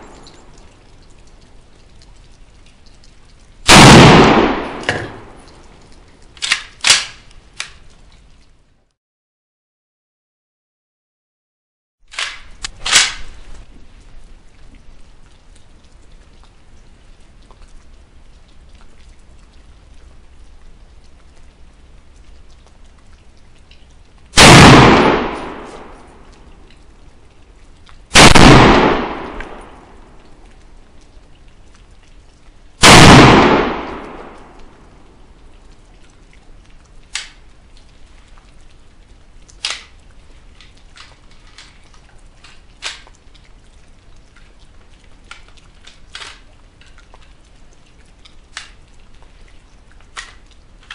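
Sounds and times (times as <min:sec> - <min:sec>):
rifle shots echoing: 0:03.7 - 0:05.5, 0:24.4 - 0:26.1, 0:28.1 - 0:30.0, 0:32.8 - 0:34.6
light clicks: 0:36.8 - 0:37.9.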